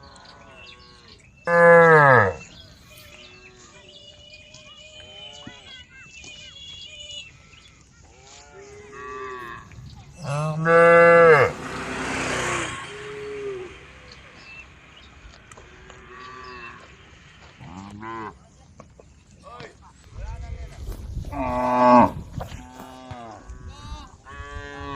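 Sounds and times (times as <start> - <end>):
cattle mooing: 0.1 - 2.5, 8.6 - 13.8, 21.3 - 23.7.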